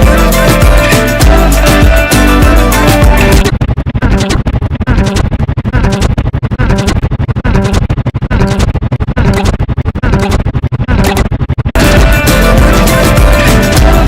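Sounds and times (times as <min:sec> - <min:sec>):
loud music with choppy rhythm: 0:00.0 - 0:03.5, 0:11.8 - 0:14.0.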